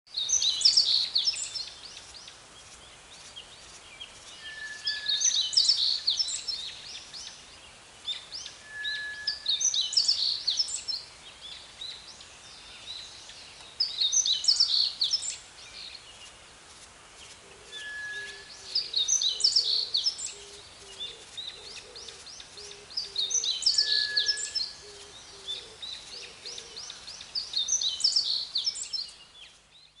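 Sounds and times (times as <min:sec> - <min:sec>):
faint outdoor hiss: 0:00.1 - 0:30.0
songbird warbling: 0:03.3 - 0:07.4, 0:08.1 - 0:12.0, 0:12.6 - 0:15.9, 0:17.4 - 0:29.4
brief steady bird whistle: 0:17.8 - 0:18.5.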